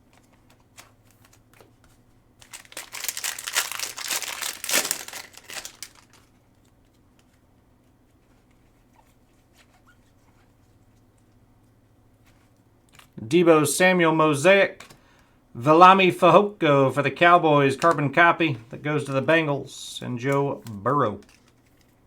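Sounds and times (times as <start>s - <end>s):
plastic wrapper crinkling and tearing: 2.4s - 7.0s, 21.2s - 22.0s.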